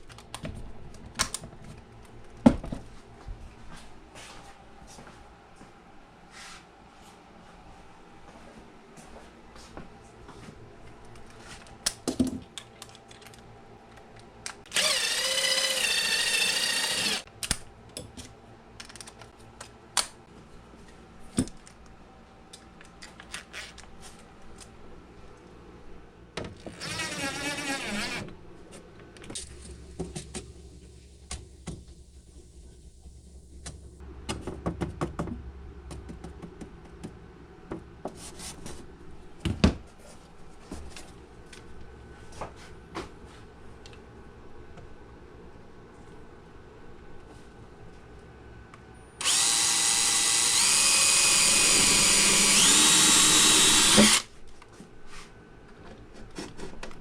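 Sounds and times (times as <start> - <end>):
power drill running: 14.7 - 17.3, 26.8 - 28.3, 49.2 - 54.3
clicks and knocks of tools: 17.3 - 20.2.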